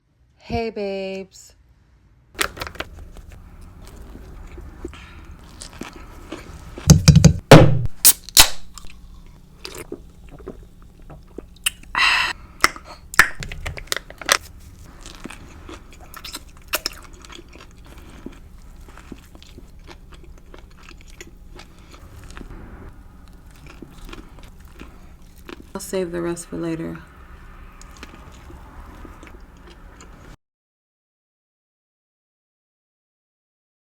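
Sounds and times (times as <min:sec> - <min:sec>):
biting and chewing: 0:02.4 - 0:07.2, 0:12.6 - 0:25.8, 0:27.2 - 0:30.4.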